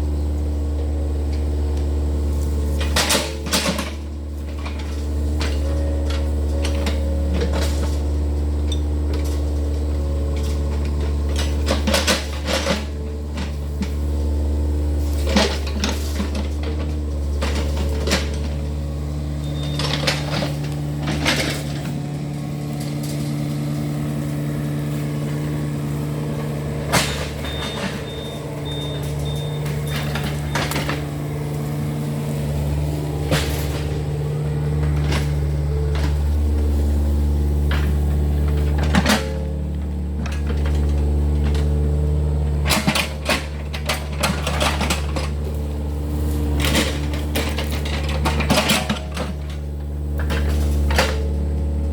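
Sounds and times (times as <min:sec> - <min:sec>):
excavator diesel engine running: 0:00.0 - 0:51.9
metallic clanks and knocks: 0:24.9 - 0:36.9, 0:37.6 - 0:41.7.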